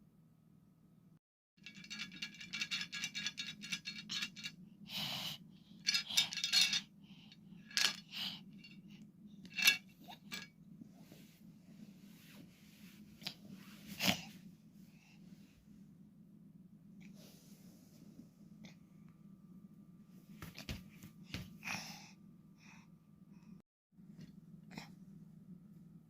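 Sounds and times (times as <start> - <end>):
low steady hum: 0.0 - 26.0
small hard objects rattling: 5.9 - 6.8.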